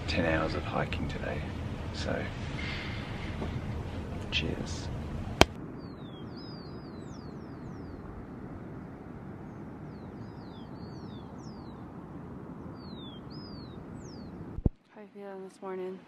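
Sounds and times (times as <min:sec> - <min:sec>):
birds whistling: 0:05.8 - 0:08.0, 0:09.5 - 0:11.8, 0:12.6 - 0:14.4.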